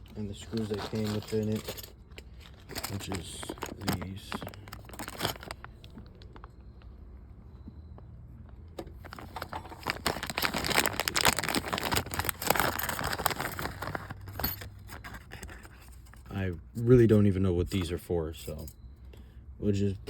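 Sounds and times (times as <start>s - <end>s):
crinkling and rustling: 0.0s - 7.0s, 8.5s - 16.4s.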